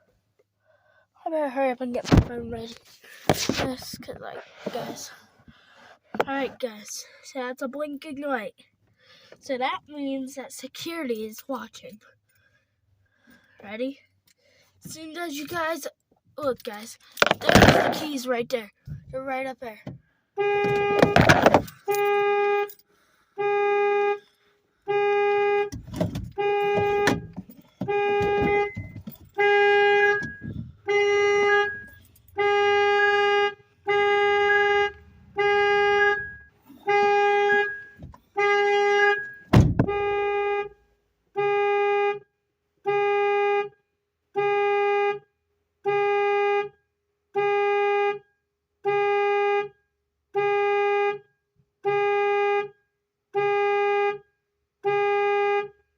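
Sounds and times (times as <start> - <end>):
car alarm horn blasts: 20.4 - 22.8, 23.4 - 24.2, 24.8 - 55.8
loud thump: 39.5 - 40.0.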